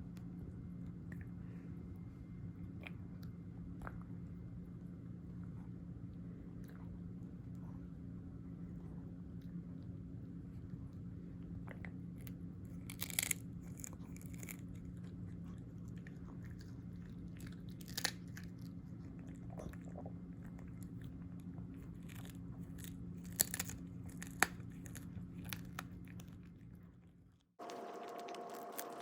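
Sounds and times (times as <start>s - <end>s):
dog chewing and crunching: 8.7s - 29.0s
low hum: 27.6s - 29.0s.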